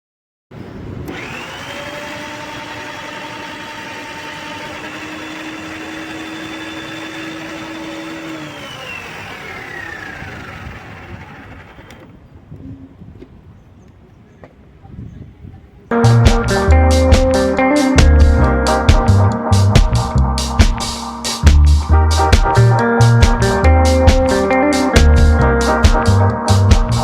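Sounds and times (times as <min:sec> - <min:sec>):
mixer grinder motor whining: 0:01.0 - 0:12.1.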